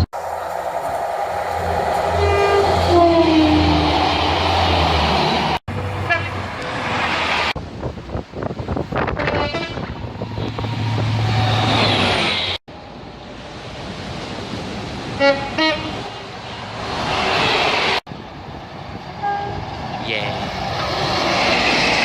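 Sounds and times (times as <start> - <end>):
train running noise: 0.0 - 22.0
two-tone train horn blasts: 1.3 - 3.9, 5.8 - 6.4, 9.1 - 9.9, 15.2 - 16.2, 19.2 - 19.6.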